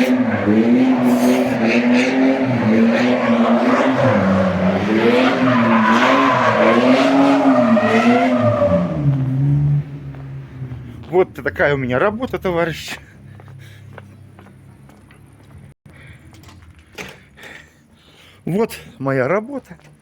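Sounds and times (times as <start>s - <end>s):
vehicle engine revving: 0.0s - 12.4s.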